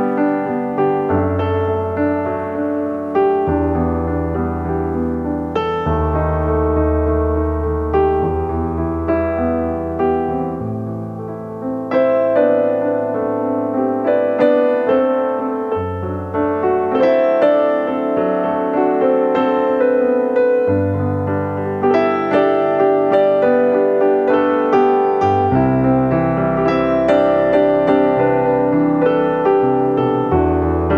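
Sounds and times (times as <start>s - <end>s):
piano chords: 0.0s - 30.9s
held bass notes: 3.4s - 11.1s.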